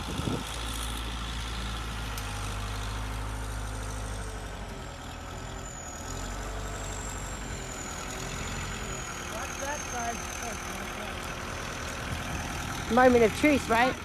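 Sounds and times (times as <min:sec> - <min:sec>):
skid steer engine running: 0:00.0 - 0:14.0.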